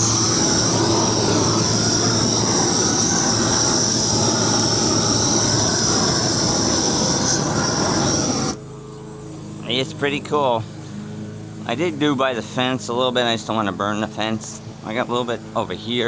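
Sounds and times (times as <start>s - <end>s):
propane torch hissing: 0.0s - 8.6s.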